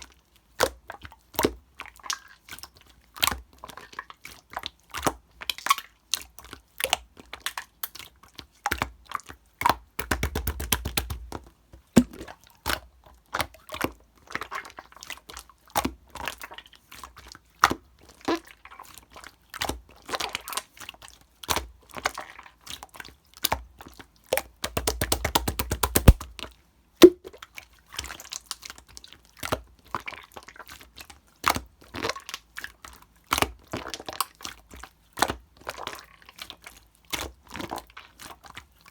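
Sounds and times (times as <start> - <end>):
slime clicking and popping: 24.6 - 26.2.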